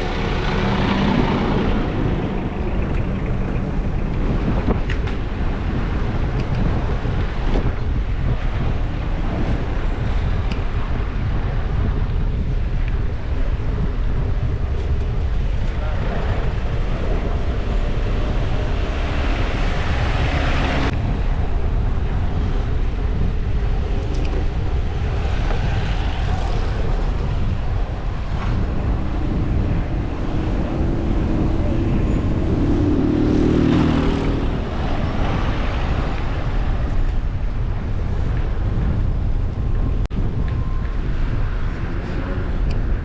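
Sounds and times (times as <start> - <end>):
vehicle passing: 0.0 - 4.7, 15.8 - 20.9, 28.1 - 37.4
street traffic noise: 0.0 - 43.0
wind buffeting microphone: 0.0 - 43.0.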